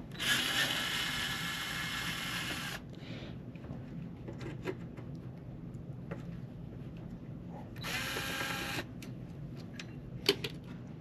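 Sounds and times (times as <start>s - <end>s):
cordless screwdriver running: 7.8s - 8.8s.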